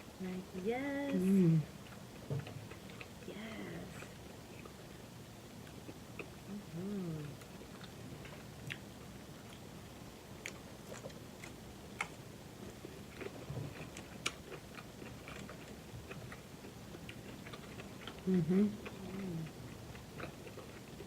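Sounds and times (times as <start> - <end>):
person chewing: 1.8 - 3.3, 5.6 - 6.5, 7.1 - 9.6, 10.4 - 21.0.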